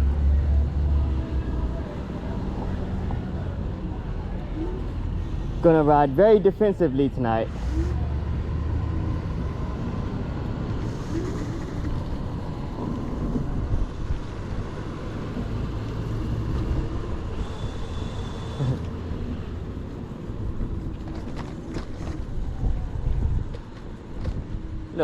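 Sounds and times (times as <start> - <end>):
wind and road noise: 0.0 - 25.0.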